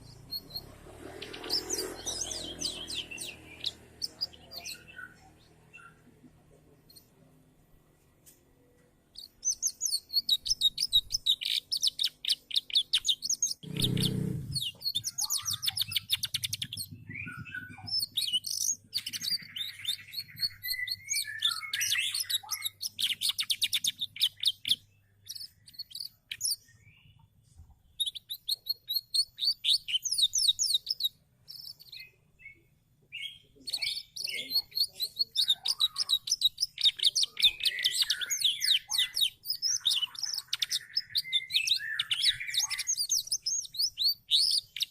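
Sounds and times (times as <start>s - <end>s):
canary singing: 0.0s - 6.2s, 8.8s - 44.9s.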